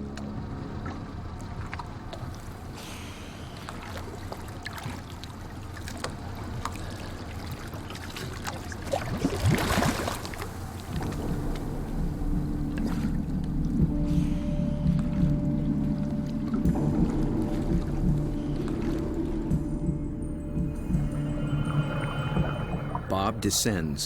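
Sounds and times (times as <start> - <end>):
rush of water: 0.0 - 12.0
water sloshing around boat: 0.0 - 23.1.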